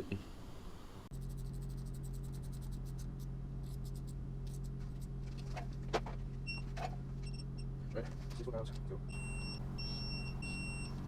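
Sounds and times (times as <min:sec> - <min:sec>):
steady low hum: 0:00.0 - 0:11.0
scratchy ticks of hands working: 0:01.2 - 0:05.1.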